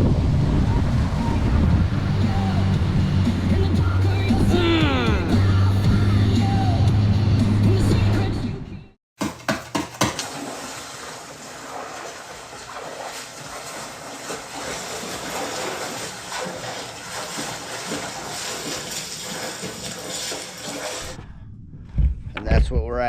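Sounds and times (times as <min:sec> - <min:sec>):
water rushing: 0:00.0 - 0:06.8, 0:10.1 - 0:21.2.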